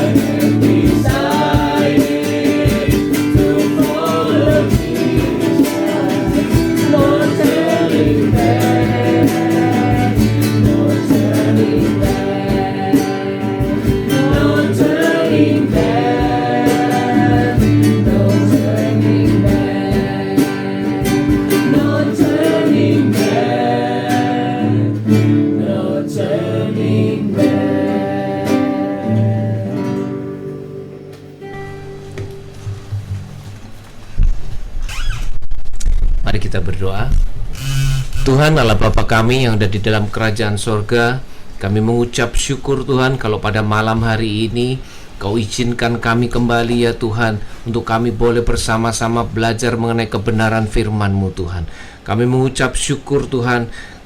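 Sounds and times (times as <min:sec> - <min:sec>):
person singing worship song: 0:00.0 - 0:30.8
guitar accompaniment: 0:00.0 - 0:34.4.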